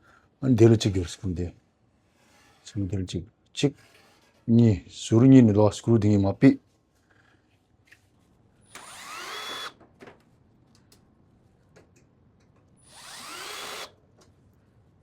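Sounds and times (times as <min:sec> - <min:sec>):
power drill whining: 0:08.7 - 0:09.8, 0:12.8 - 0:14.0.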